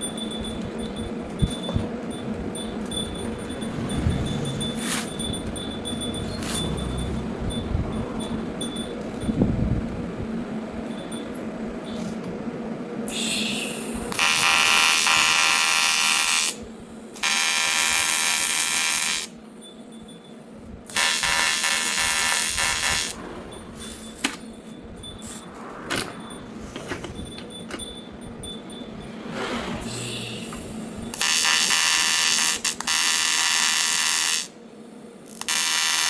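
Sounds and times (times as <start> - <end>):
welding arc buzzing: 13.1 - 19.4, 20.9 - 23.2, 29.9 - 34.6, 35.2 - 36.0.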